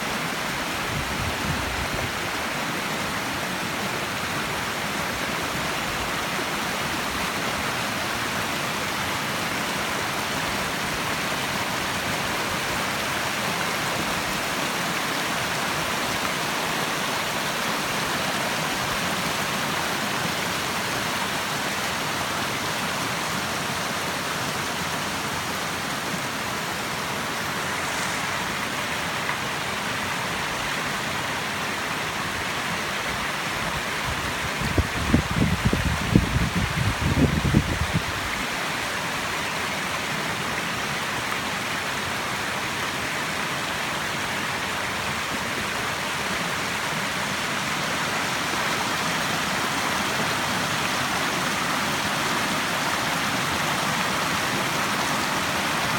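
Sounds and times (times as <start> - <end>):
stream water flowing: 0.0 - 55.9.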